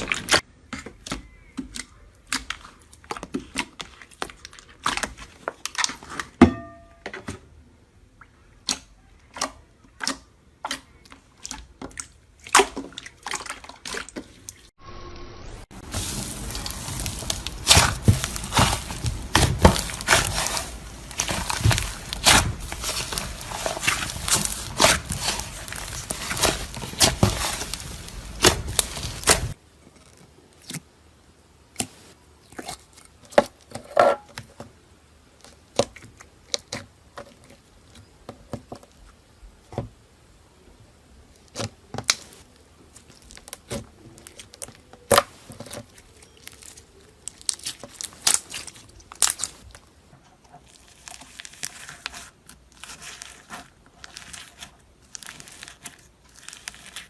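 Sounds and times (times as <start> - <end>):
slime crackling and popping: 15.8 - 30.8, 41.3 - 49.9, 50.6 - 57.0.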